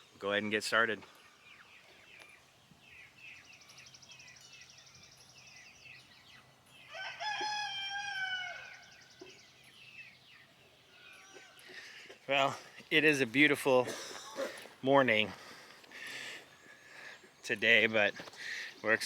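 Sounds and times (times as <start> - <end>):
birds chirping: 0.0 - 19.0
rooster crowing: 6.9 - 8.9.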